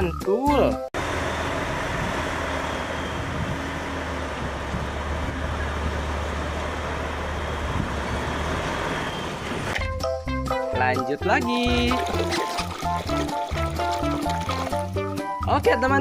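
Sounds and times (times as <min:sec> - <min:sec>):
truck engine running: 0:01.0 - 0:09.7
road noise: 0:01.0 - 0:09.8.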